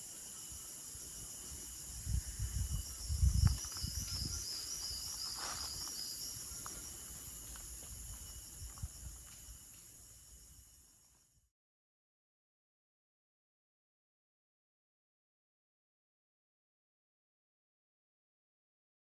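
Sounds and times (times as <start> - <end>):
crickets chirring: 0.0 - 11.5.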